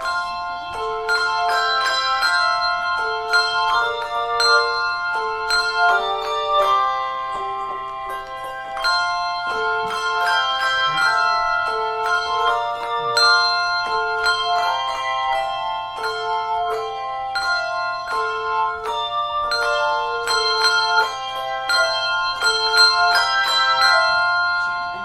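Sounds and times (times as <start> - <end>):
handbell choir playing: 0.0 - 25.0
low bell ringing: 0.0 - 25.0.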